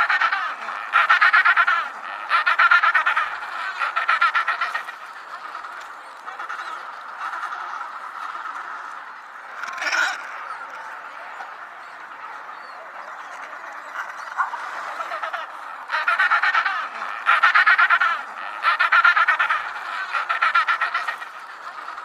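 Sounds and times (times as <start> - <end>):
penguins calling: 0.0 - 22.0.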